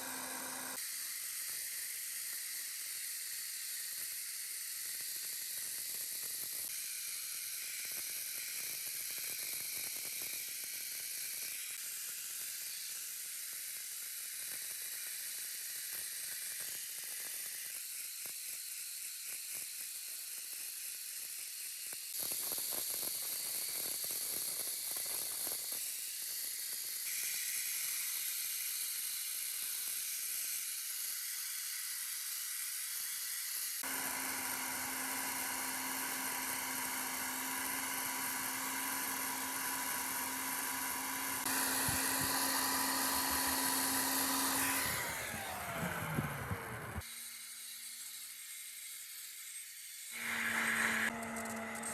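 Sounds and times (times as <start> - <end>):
humming motor: 0.0 - 0.8, 33.8 - 47.0, 50.2 - 51.9
high air hissing: 33.8 - 47.0.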